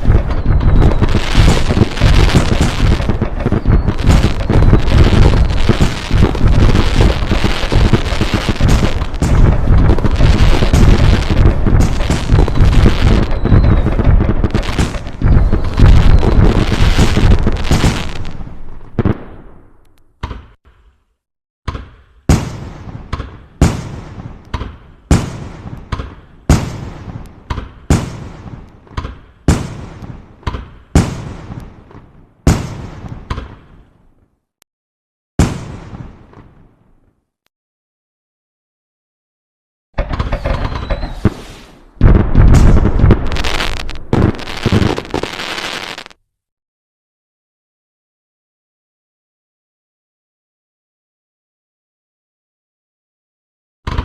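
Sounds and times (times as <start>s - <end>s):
fireworks booming and crackling: 0.0s - 19.8s, 22.2s - 34.0s, 35.4s - 37.0s, 40.0s - 46.2s.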